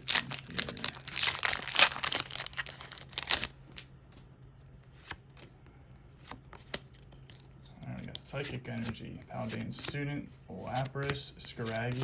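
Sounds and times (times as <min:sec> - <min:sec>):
foil wrapper tearing: 0:00.0 - 0:03.6.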